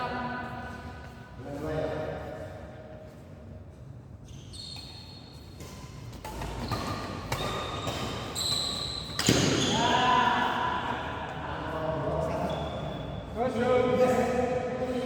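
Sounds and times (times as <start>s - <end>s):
shoe squeaks on court floor: 4.2s - 9.9s, 12.3s - 13.2s
racket hitting shuttlecock: 4.8s - 9.8s.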